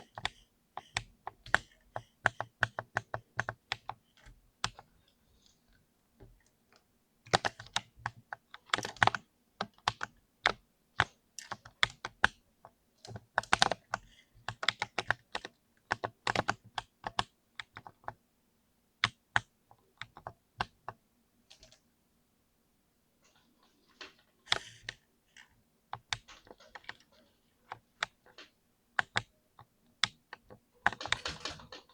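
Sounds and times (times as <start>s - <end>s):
mechanical keyboard typing: 0.0s - 4.9s, 7.3s - 12.4s, 13.0s - 18.2s, 26.0s - 31.9s.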